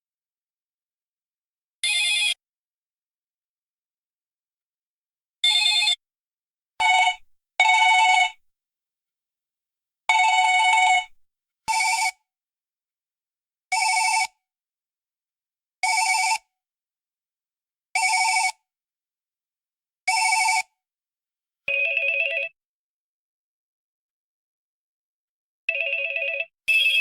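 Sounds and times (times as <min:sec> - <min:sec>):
phone ringtone ringing: 0:06.8 - 0:08.4, 0:21.7 - 0:22.5, 0:25.7 - 0:27.0.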